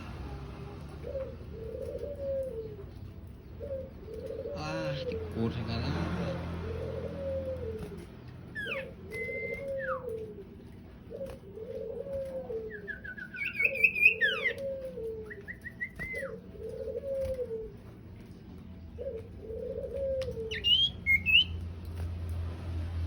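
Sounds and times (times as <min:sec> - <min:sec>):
dove cooing: 0:00.8 - 0:21.6
songbird whistling and trilling: 0:08.5 - 0:10.2, 0:12.7 - 0:16.4, 0:20.2 - 0:21.7.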